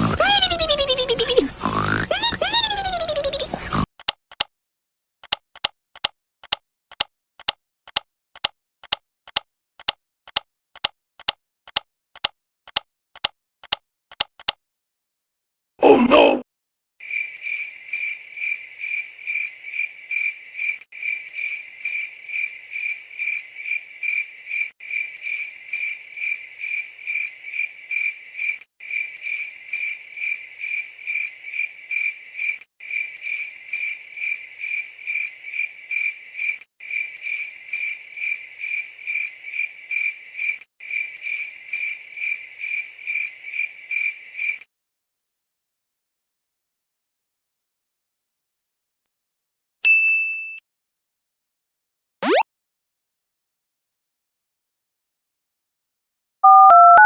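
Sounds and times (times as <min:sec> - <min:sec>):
cricket-like chirping: 0:17.0 - 0:44.6.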